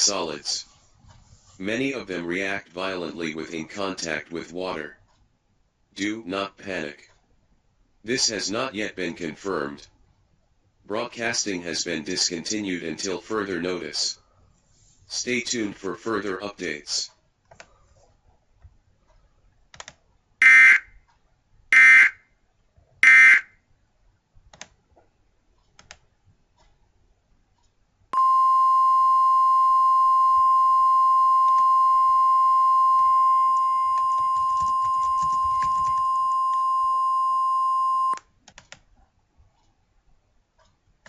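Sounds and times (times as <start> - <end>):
faint clicks: 18.6 - 20.1, 24.4 - 26.8, 38.2 - 39.8
steady high alert tone: 28.2 - 38.2.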